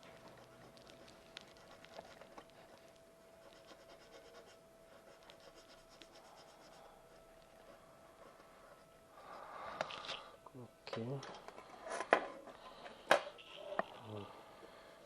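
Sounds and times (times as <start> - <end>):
faint clicks and scratches: 0.0 - 8.9
faint steady hum: 0.0 - 15.0.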